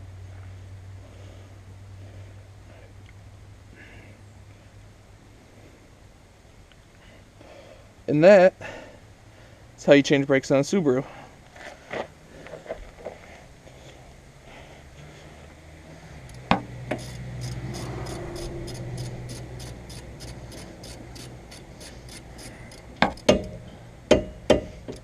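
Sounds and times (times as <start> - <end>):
faint steady hum: 0.0 - 25.0
light regular ticking: 16.2 - 23.5, 24.5 - 25.0
metal parts scraping: 16.3 - 23.3
tools clicking and knocking: 16.3 - 25.0.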